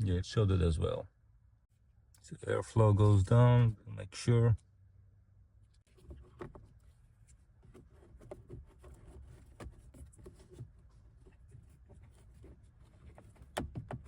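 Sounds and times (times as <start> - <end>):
filter frame rubbing on plastic: 5.8 - 14.0.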